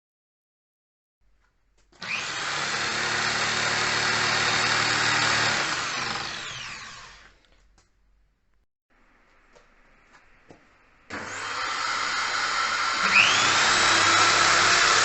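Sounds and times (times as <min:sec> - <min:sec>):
drill winding down whine: 0:02.0 - 0:07.4, 0:11.1 - 0:15.0
electric drill running: 0:02.0 - 0:07.4, 0:11.1 - 0:15.0.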